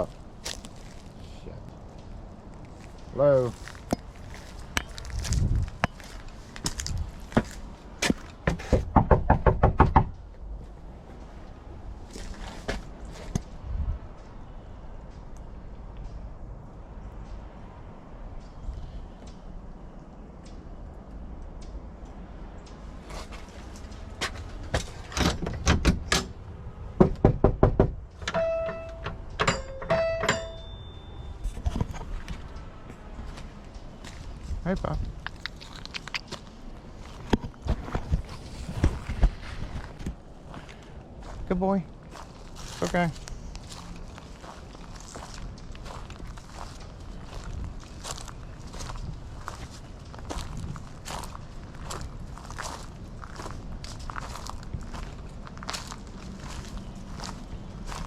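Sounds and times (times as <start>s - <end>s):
sharp knocks and clicks: 7.3s - 10.4s, 27.0s - 30.6s
knocking on a door: 8.5s - 10.1s, 27.0s - 28.0s
doorbell ding-dong chime: 28.3s - 31.4s.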